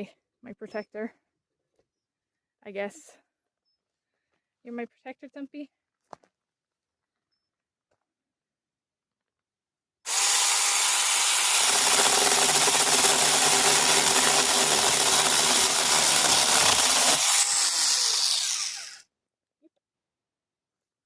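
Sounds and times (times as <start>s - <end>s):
chainsaw sawing wood: 10.1s - 19.0s.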